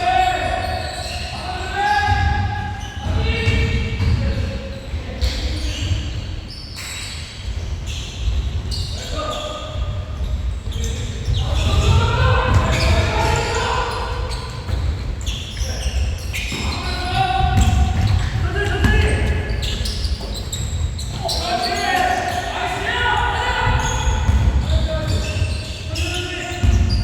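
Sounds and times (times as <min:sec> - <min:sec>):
basketball bouncing on gym floor: 0:01.9 - 0:06.3, 0:10.2 - 0:21.8, 0:23.6 - 0:27.0
players shouting in hall: 0:11.4 - 0:14.6, 0:21.2 - 0:25.1.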